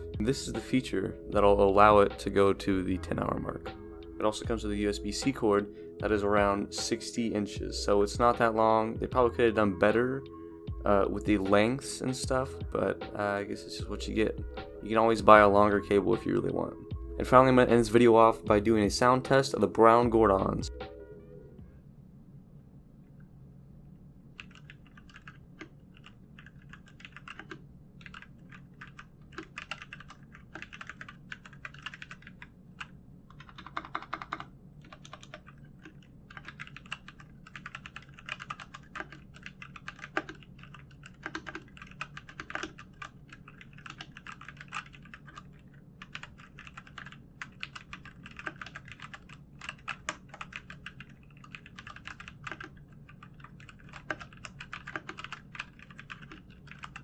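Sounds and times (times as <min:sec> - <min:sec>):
mechanical keyboard clacking: 0:24.4 - 0:57.0.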